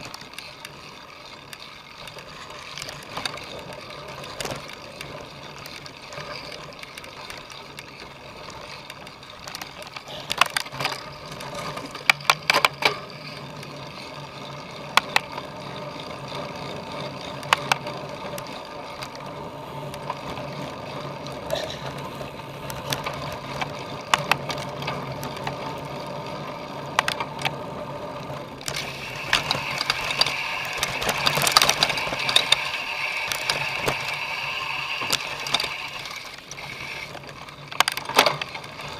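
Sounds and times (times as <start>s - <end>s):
chain and frame rattling: 0.0s - 19.3s
bike tyre riding noise: 0.0s - 38.9s.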